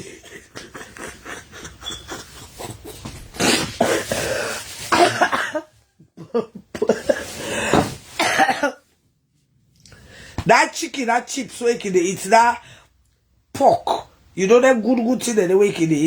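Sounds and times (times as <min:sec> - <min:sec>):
person coughing: 0:03.4 - 0:08.8.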